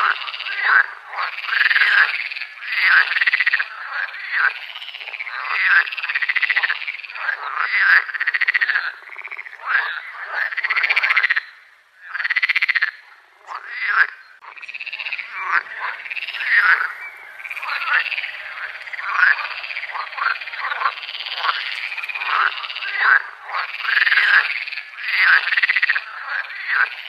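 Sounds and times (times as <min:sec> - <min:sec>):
frogs croaking: 0:00.0 - 0:27.0.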